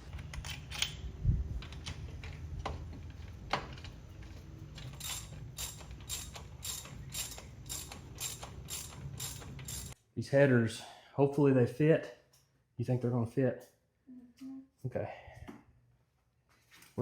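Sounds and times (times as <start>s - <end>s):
ratchet wrench ratcheting: 4.8s - 10.0s.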